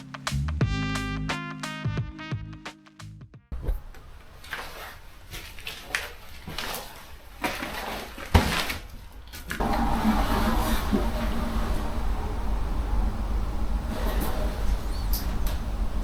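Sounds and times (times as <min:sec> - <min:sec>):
steady rushing noise: 0:09.6 - 0:16.0.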